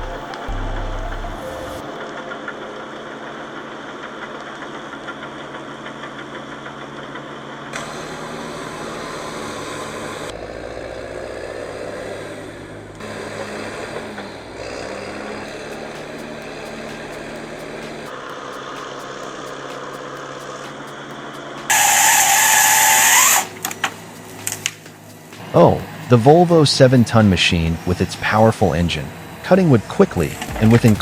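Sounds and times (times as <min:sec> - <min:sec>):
heavy machinery diesel engines: 0:00.0 - 0:28.3.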